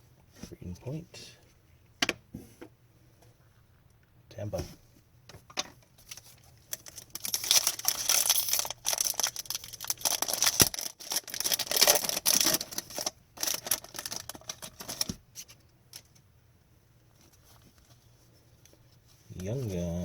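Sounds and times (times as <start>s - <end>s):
foil wrappers crinkling and tearing: 6.0s - 15.2s.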